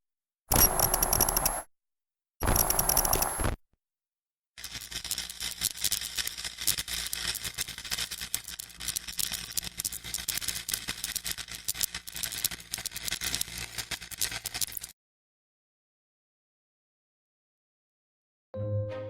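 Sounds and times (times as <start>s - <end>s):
glitchy crackling clicks: 0.5s - 1.7s, 2.4s - 3.6s, 4.6s - 14.9s.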